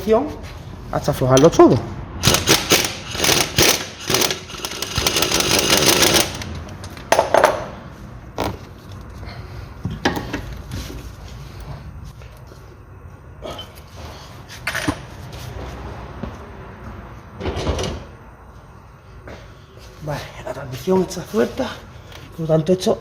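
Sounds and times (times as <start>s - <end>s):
impact wrench hammering: 2.2s - 7.6s.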